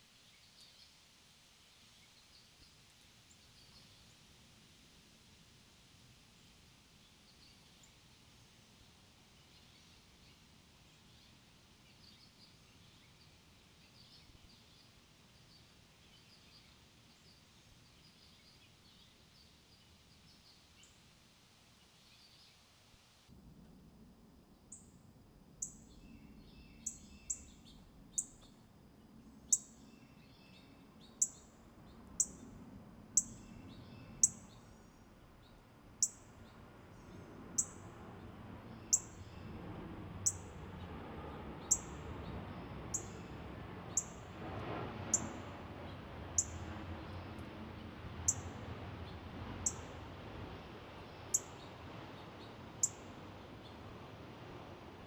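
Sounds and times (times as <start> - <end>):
songbird high chirps: 0.2 - 1.0, 1.9 - 4.1, 9.4 - 21.0, 25.6 - 28.6, 29.5 - 32.5, 33.2 - 37.8, 38.8 - 39.5, 40.2 - 40.5, 41.6 - 42.0, 42.9 - 43.3, 43.9 - 44.1, 46.4 - 46.6, 49.6 - 49.9, 51.3 - 51.7, 52.8 - 53.0.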